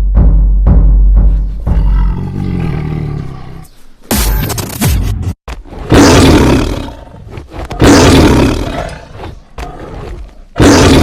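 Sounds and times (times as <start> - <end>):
tiger roaring: 1.7 - 3.7, 5.8 - 11.0.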